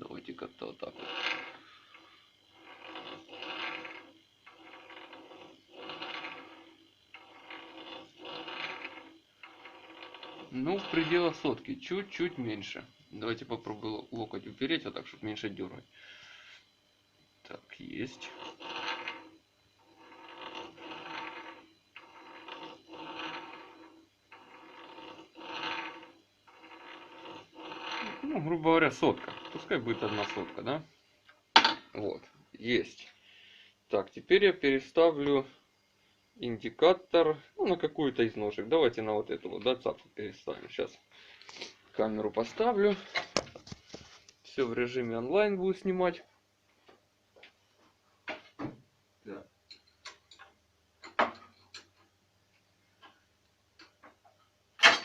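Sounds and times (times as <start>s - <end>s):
dry metallic scraping: 0.0s - 16.8s, 17.5s - 32.1s, 36.2s - 45.0s.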